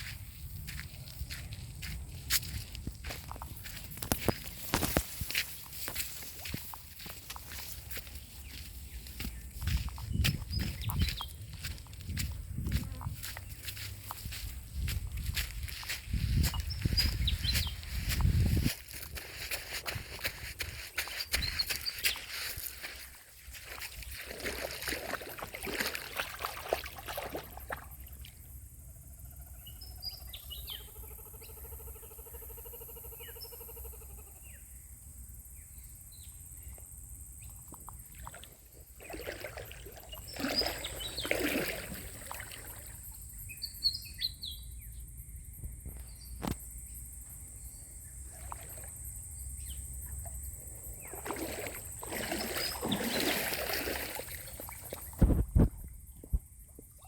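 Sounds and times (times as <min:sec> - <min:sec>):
creek ambience: 0:00.0 - 0:29.1, 0:37.3 - 0:44.6, 0:46.4 - 0:57.0
small birds chirping: 0:00.6 - 0:26.4, 0:39.0 - 0:45.0, 0:49.4 - 0:55.2.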